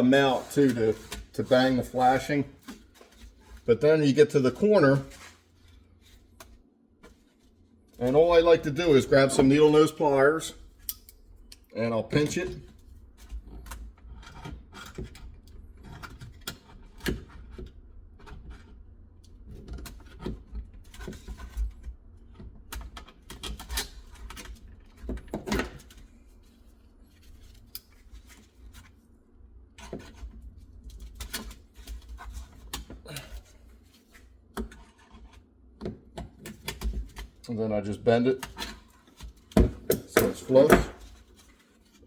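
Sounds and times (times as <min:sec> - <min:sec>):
pliers bending sheet metal: 0:39.9 - 0:41.0.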